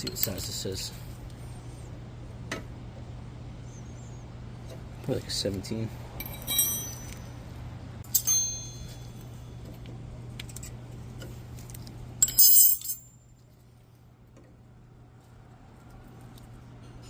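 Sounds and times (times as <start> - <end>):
steady low hum: 0.0 - 17.0
steel sockets and tools clinking: 6.2 - 7.3, 8.0 - 9.2, 12.2 - 13.2.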